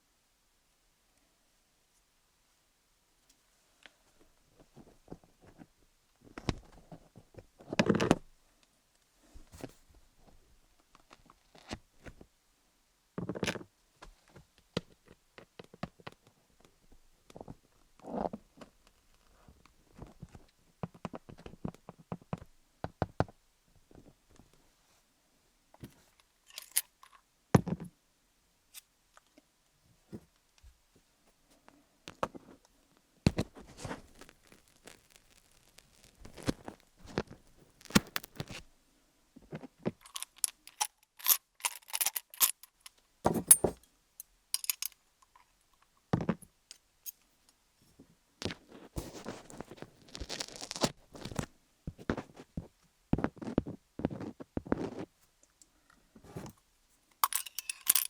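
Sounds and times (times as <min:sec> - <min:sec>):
wooden picks tapping and scraping: 0:39.5 - 0:43.8, 0:44.6 - 0:45.4, 0:57.2 - 0:58.0.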